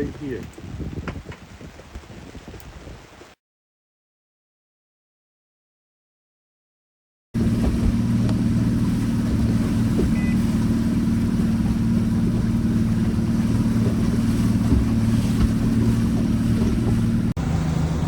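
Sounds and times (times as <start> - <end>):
wind and water hiss: 0.0 - 3.4
motorboat engine drone: 7.4 - 18.0.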